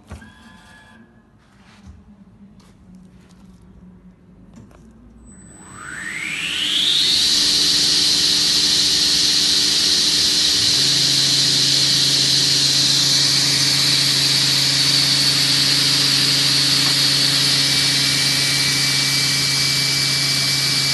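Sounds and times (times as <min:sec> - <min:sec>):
lower hum: 0:05.3 - 0:20.9
table saw high whine: 0:05.3 - 0:20.9.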